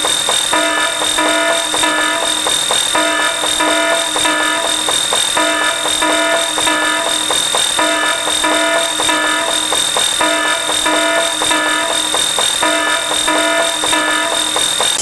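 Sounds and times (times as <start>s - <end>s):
short electronic tones: 12.6s - 15.0s.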